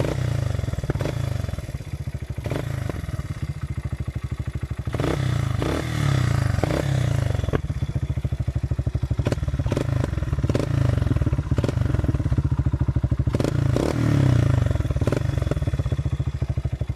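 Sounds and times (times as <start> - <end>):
engine revving: 0.0 - 1.6, 2.4 - 3.1, 4.9 - 7.6, 9.2 - 12.2, 13.3 - 15.7
quad engine idling: 0.0 - 16.9.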